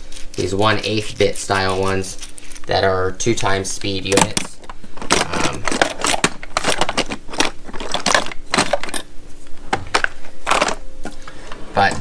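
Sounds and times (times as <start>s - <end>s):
screwdrivers clattering in a drawer: 3.8s - 9.1s, 9.7s - 10.9s.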